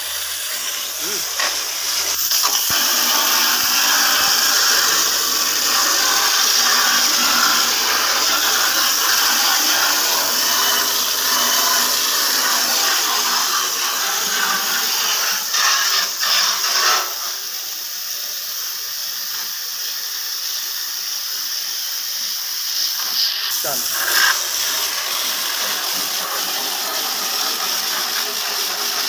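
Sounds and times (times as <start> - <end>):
pressure washer spraying hiss: 0.0 - 29.0.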